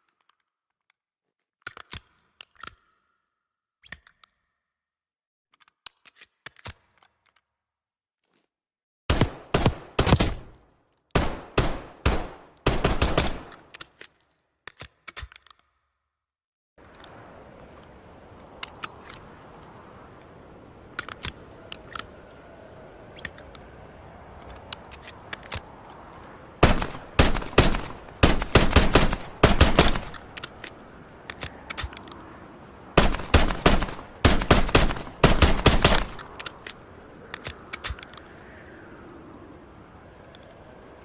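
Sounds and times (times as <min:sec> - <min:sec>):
pistol gunshots: 0:09.1 - 0:10.6, 0:11.2 - 0:13.7, 0:26.6 - 0:30.4, 0:33.0 - 0:36.2.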